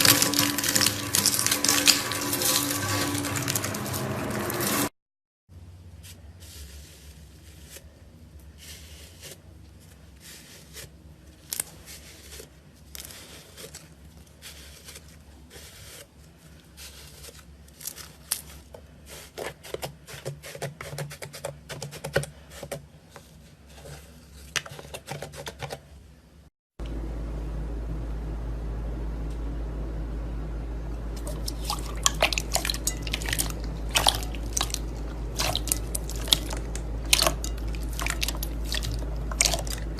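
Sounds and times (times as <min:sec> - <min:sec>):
steady low hum: 0:26.2 - 0:39.9.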